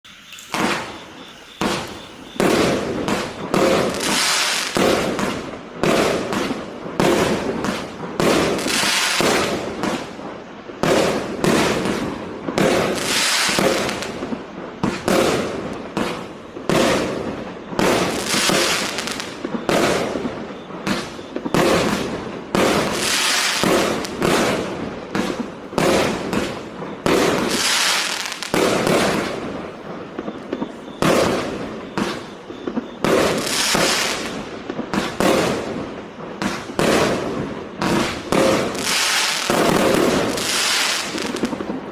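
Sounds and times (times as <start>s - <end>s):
firework launch pops and bursts: 0.3s - 41.9s.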